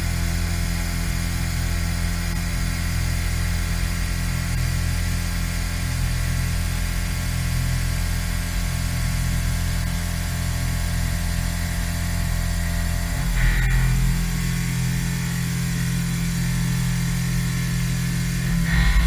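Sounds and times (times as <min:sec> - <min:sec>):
milling machine spindle drone: 0:11.4 - 0:19.0.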